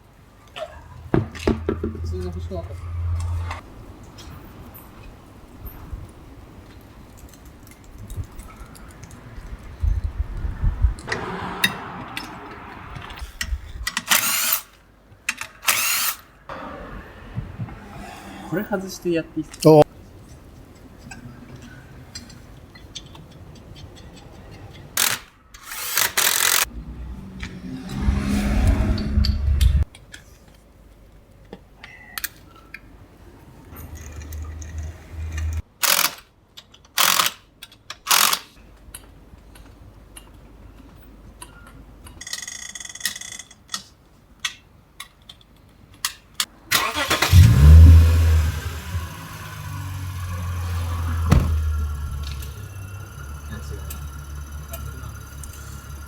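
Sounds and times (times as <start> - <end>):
low engine running: 0.7 - 3.6, 33.6 - 35.6, 47.3 - 56.0.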